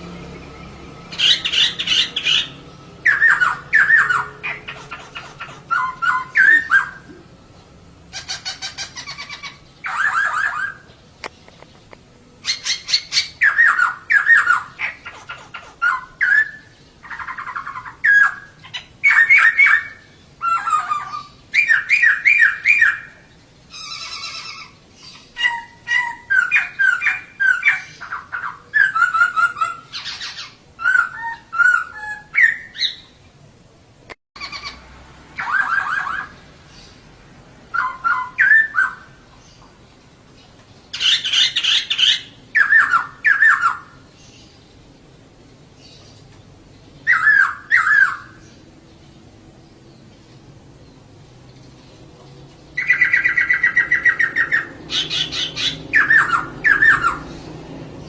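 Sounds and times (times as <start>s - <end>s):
bird chattering chirps: 1.1s - 7.4s, 8.1s - 33.2s, 34.4s - 34.8s, 40.4s - 44.8s, 47.0s - 48.7s, 52.8s - 57.6s.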